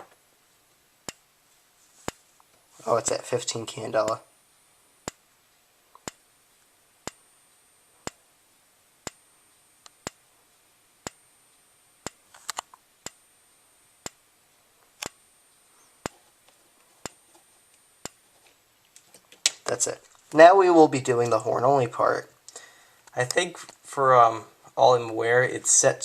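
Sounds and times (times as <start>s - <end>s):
faint high whine: 0.0s - 26.0s
strobe ticking: 0.7s - 1.4s, 2.1s - 18.2s.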